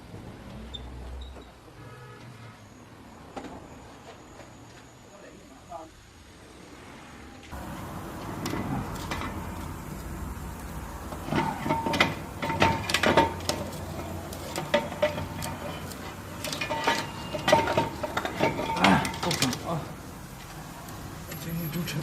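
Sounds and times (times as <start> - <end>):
steady low hum: 7.5 - 21.3
metal tools clinking: 11.2 - 19.8.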